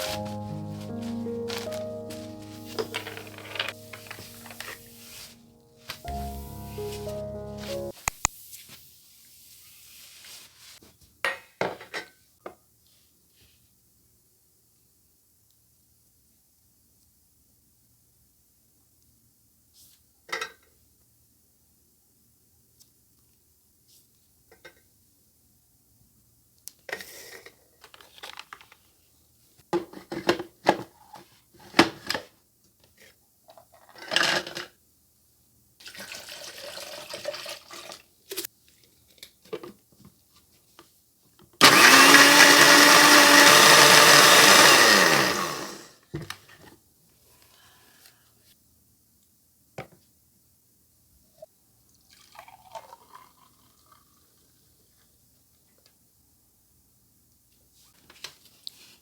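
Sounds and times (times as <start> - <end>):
small electric motor running: 41.6 - 45.9.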